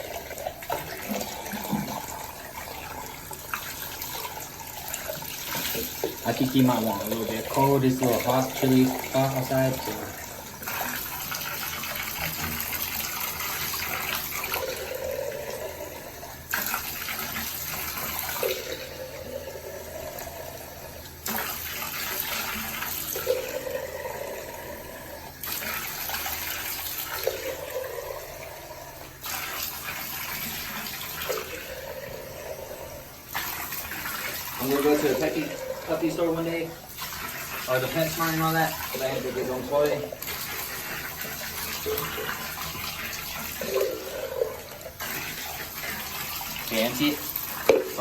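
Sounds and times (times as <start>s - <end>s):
tap water splashing in bath: 0.0s - 14.8s, 21.0s - 23.4s, 33.3s - 48.0s.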